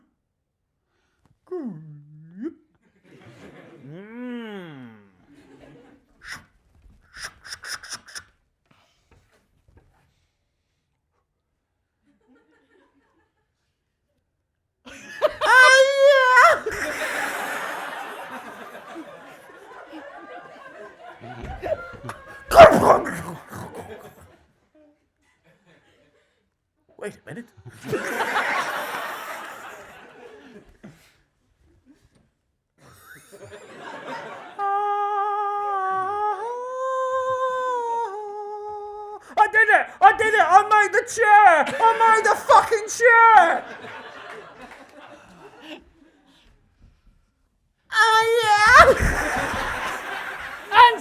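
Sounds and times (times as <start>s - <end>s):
man making warbling vocal effect: 1.5s - 2.6s, 3.9s - 5.2s, 22.1s - 24.2s, 27.8s - 28.3s, 34.8s - 43.7s, 47.9s - 49.8s, 50.7s - 51.0s
audience laughing: 14.9s - 24.4s, 27.7s - 30.7s, 33.2s - 34.8s, 39.4s - 45.9s, 48.4s - 51.0s
breathy noise: 22.4s - 24.2s.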